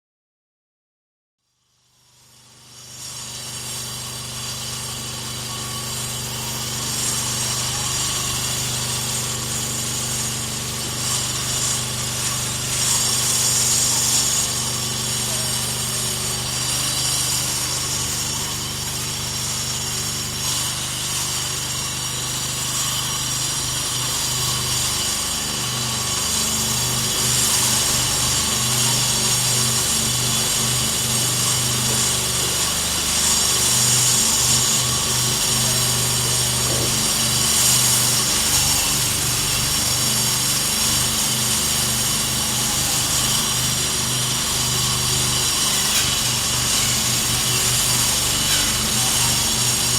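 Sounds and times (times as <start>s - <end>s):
stone grinding hiss: 4.9s - 49.9s
motor hum: 25.6s - 49.9s.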